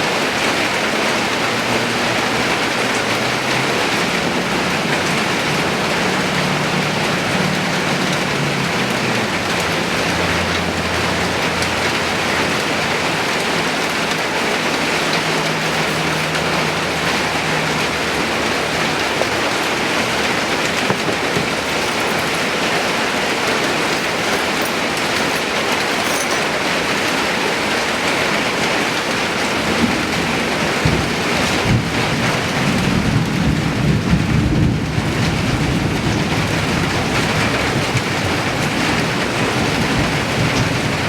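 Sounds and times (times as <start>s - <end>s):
steady rain: 0.0s - 41.0s.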